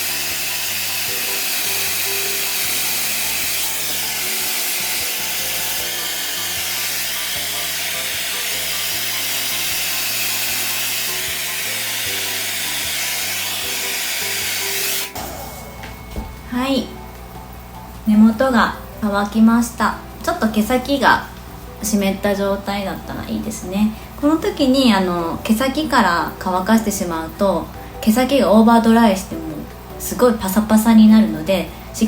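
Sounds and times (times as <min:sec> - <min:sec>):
hair dryer blowing: 0:00.0 - 0:16.3
background music: 0:00.0 - 0:32.0.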